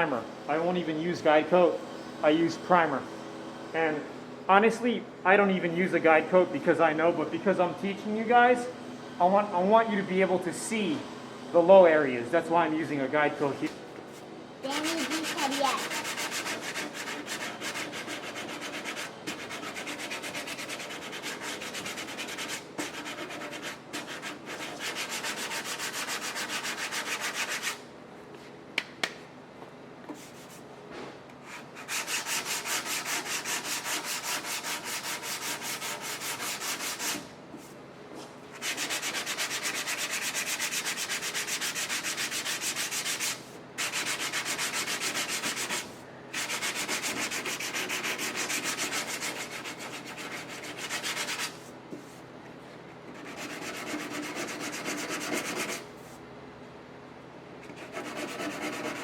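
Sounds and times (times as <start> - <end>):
sandpaper rasping on sheet metal: 14.6 - 27.8, 31.5 - 37.3, 38.5 - 51.6, 53.1 - 55.9, 57.7 - 59.0.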